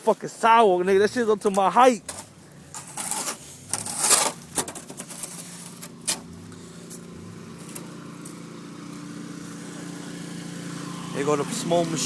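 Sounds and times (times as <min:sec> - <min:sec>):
short crackling noises: 0:01.2 - 0:09.1
small engine running: 0:02.5 - 0:12.0.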